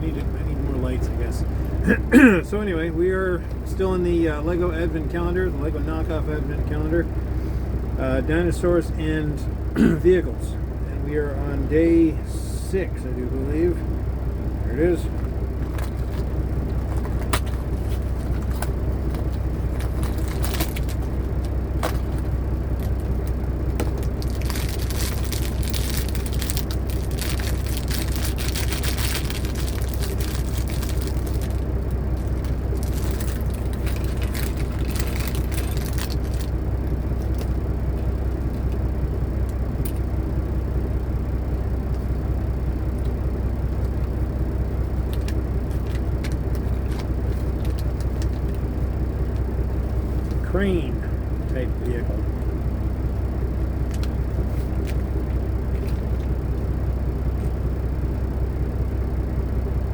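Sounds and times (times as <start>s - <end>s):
low diesel engine rumble: 0.0s - 59.9s
packaging crinkling and clicking: 15.6s - 36.5s.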